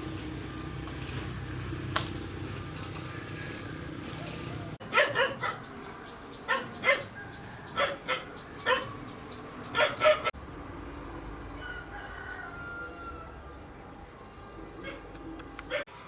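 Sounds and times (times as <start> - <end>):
dog barking: 4.3 - 7.2, 7.8 - 9.0, 9.7 - 10.3, 15.7 - 15.9.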